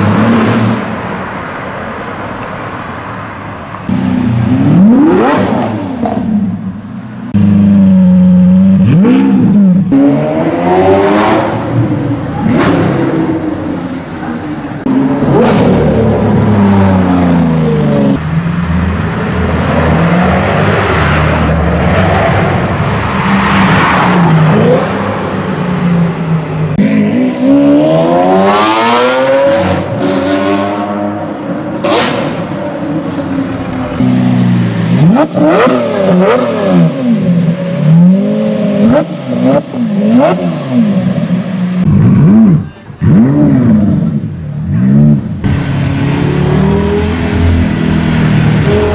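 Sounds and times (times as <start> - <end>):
sports car engine revving: 3.9 - 6.6, 7.3 - 13.0, 26.7 - 48.9.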